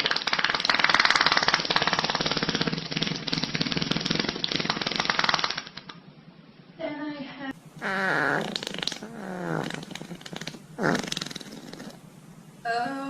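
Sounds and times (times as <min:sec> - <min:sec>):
long buzzing fart: 0:07.8 - 0:12.0.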